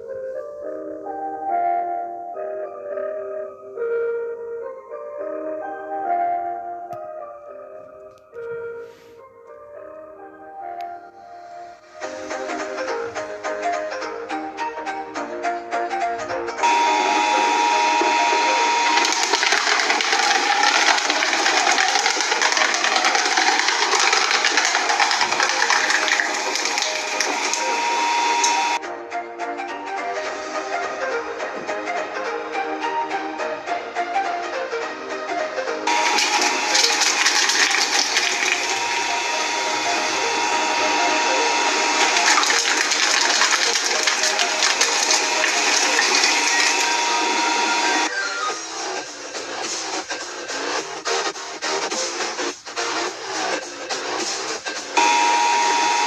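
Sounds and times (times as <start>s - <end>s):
faint machine whine: 16.6s - 28.8s, 35.9s - 48.2s, 55.0s - 56.0s
shredding machine grinding: 16.6s - 28.8s, 35.9s - 48.1s, 55.0s - 56.0s.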